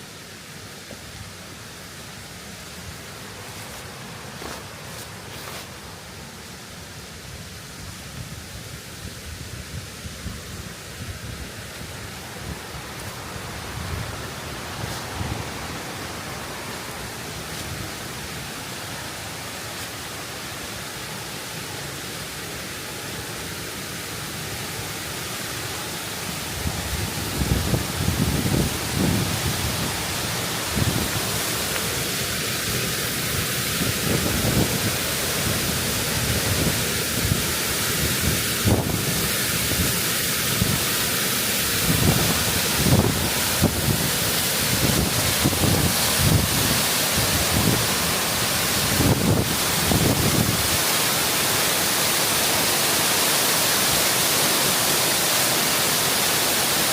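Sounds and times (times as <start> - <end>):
waterfall rushing: 0.0 - 56.9
wind buffeting microphone: 26.6 - 31.5, 41.8 - 50.8.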